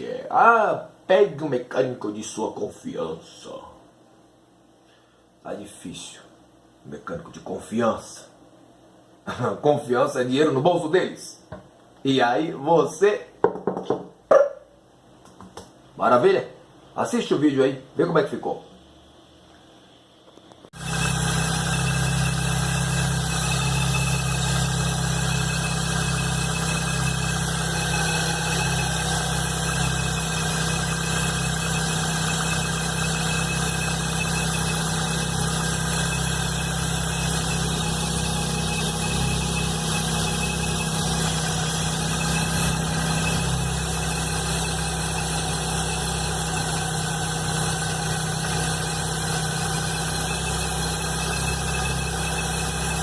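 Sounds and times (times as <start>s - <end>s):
car engine idling with loud noise: 20.8s - 53.0s.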